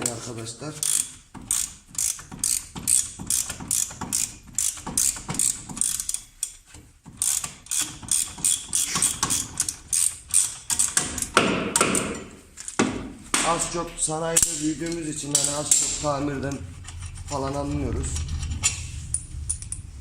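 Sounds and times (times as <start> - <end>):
ratchet wrench clicking: 0.8 - 6.6, 7.2 - 11.4.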